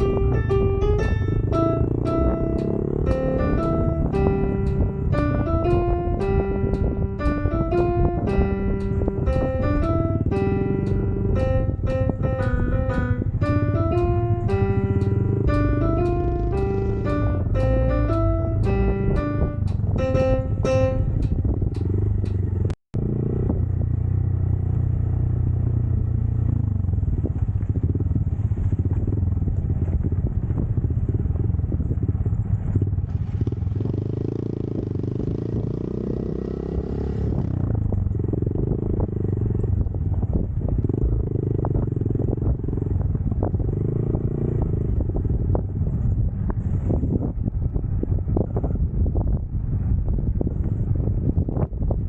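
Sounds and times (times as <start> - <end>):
guitar music: 0.0 - 22.0
motorcycle engine running: 0.0 - 47.3.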